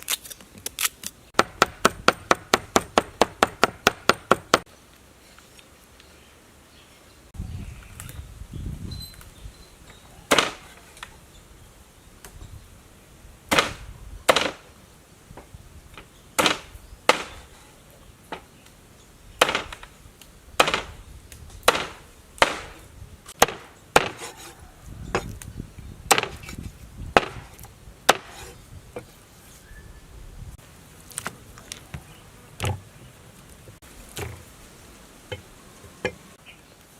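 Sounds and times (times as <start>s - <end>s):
sharp chopping blows: 1.4s - 4.7s, 10.3s - 10.7s, 13.5s - 14.7s, 16.4s - 17.6s, 19.4s - 19.9s, 20.6s - 21.0s, 21.6s - 24.3s, 26.1s - 28.5s.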